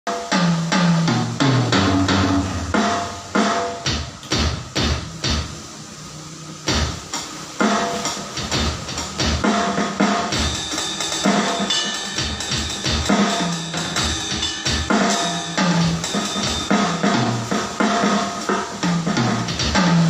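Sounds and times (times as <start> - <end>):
drum kit playing a groove: 0.1 - 5.6, 6.6 - 20.0.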